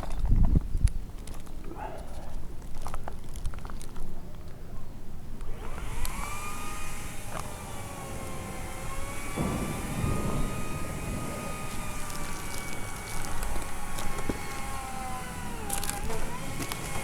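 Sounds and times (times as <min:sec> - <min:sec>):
electric chainsaw motor whining: 0:05.4 - 0:17.0.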